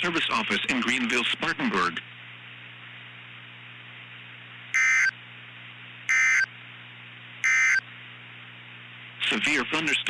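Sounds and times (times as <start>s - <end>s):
steady low hum: 0.0s - 10.0s
buzzing digital data bursts: 4.8s - 5.1s, 6.1s - 6.5s, 7.4s - 7.8s.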